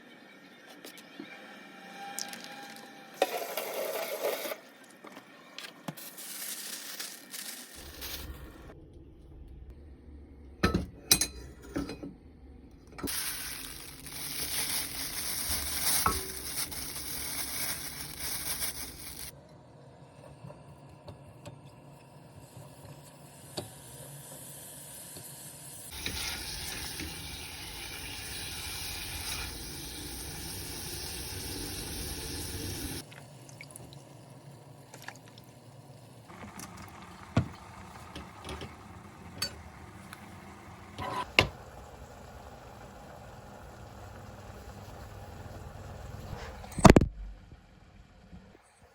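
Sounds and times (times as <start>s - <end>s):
cooking hiss: 13.0s - 19.3s, 22.6s - 33.1s.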